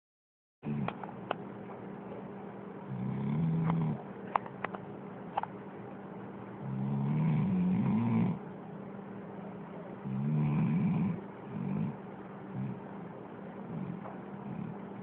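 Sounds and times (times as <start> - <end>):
dog snoring: 0.6 - 1.0, 2.8 - 4.0, 6.6 - 8.4, 10.0 - 12.9, 13.6 - 15.0.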